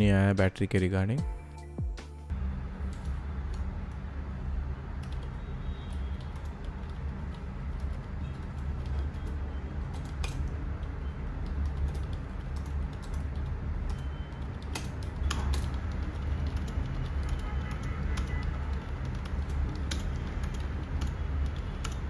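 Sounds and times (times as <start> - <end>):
steady low hum: 2.2 - 22.0
keyboard key clicks: 9.9 - 10.5, 11.3 - 22.0.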